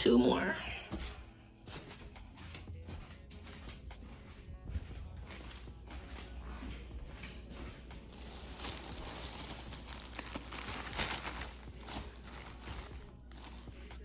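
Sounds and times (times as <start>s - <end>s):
plastic wrap crinkling: 8.0s - 14.0s.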